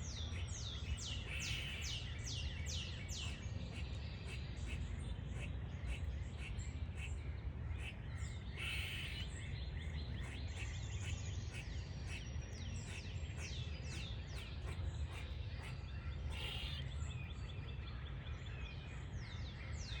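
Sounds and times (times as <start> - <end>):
squirrel squeaking: 13.9 - 16.9.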